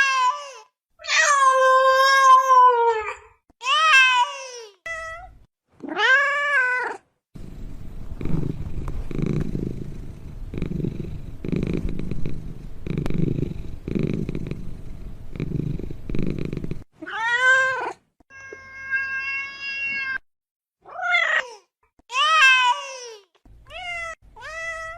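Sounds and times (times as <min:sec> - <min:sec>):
low rhythmic purring: 0:07.4 - 0:16.9.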